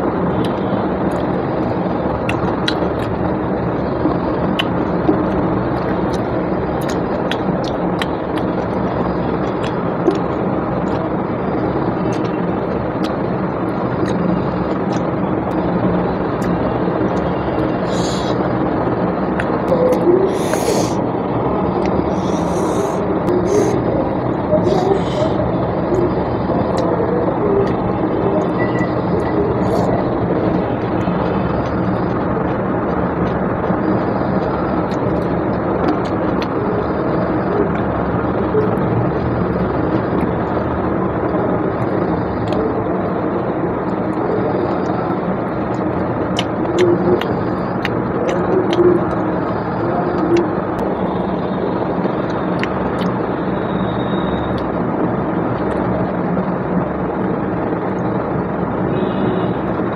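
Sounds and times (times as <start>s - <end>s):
mechanical hum: 0.0s - 59.9s.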